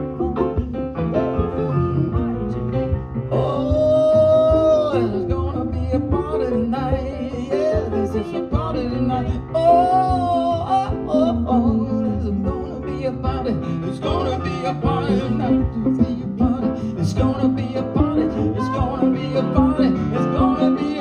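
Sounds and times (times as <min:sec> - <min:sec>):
live band with guitar: 0:00.0 - 0:21.0.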